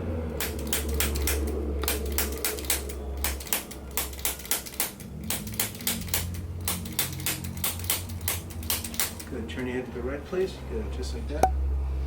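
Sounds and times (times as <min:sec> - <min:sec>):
low motor hum: 0:00.0 - 0:08.5.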